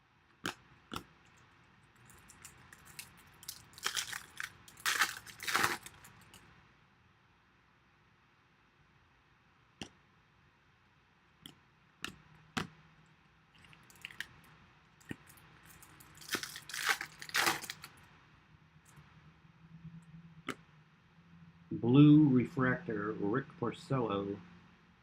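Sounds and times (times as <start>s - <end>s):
foil wrapper crinkling and tearing: 2.0s - 6.4s, 13.6s - 14.3s, 15.2s - 18.0s
cards clicking and tapping: 11.4s - 12.8s.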